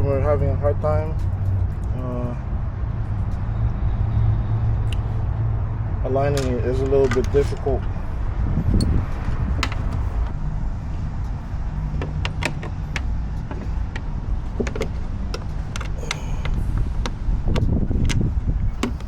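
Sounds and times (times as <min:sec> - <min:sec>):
low rumble: 0:00.0 - 0:19.0
plastic and metal parts clicking: 0:06.3 - 0:07.6, 0:11.9 - 0:19.0.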